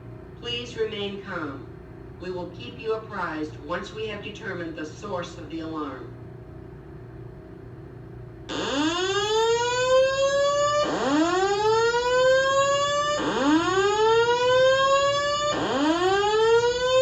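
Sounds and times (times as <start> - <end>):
fire alarm whoop tone: 8.5 - 17.0.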